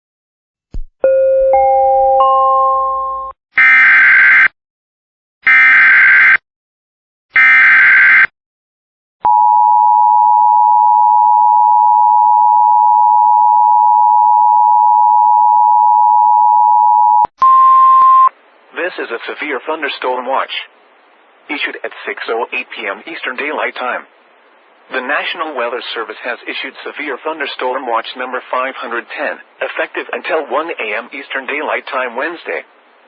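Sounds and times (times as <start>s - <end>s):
high single tone: 9.2s - 18.3s
two-tone attention signal: 9.3s - 18.3s.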